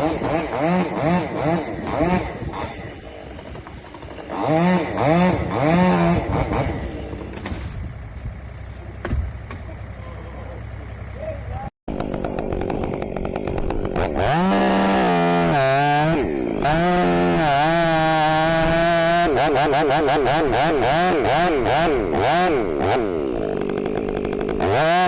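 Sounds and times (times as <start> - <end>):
chainsaw revving: 0.0 - 7.6, 11.9 - 25.0.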